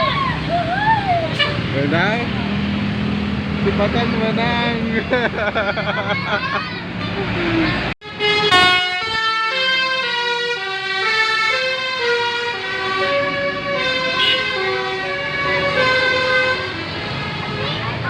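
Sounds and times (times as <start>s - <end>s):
multi-tone bus horn melody: 1.3s - 2.1s, 8.0s - 18.0s.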